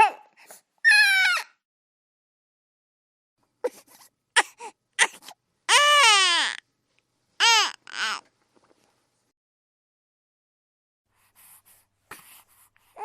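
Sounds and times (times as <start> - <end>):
baby crying: 0.0 - 1.6, 3.6 - 6.6, 7.4 - 8.2.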